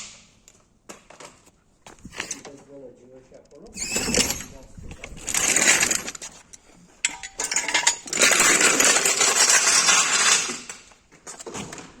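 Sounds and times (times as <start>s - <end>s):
metal tools clinking: 3.7s - 10.8s.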